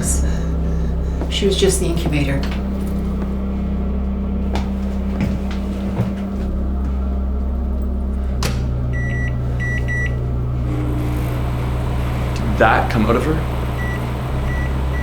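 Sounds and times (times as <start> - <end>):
microwave oven humming: 6.6 - 15.0
microwave beeping: 8.9 - 15.0.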